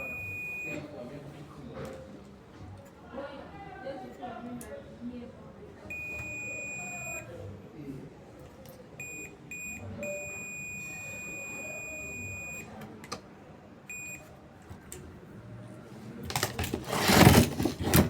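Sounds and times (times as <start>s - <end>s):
electronic buzzer beeping: 5.9s - 7.2s, 9.0s - 12.6s.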